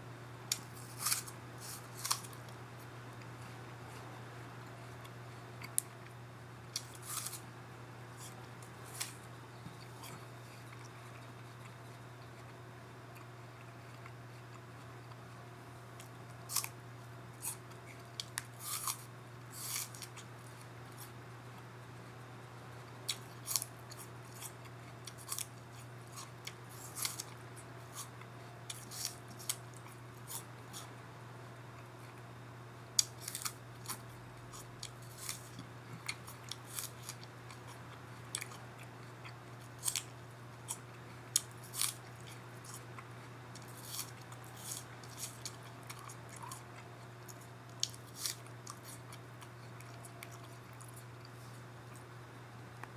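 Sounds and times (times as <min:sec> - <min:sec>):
steady low hum: 0:00.0 - 0:52.9
apple being chewed: 0:00.5 - 0:22.2, 0:22.8 - 0:52.2.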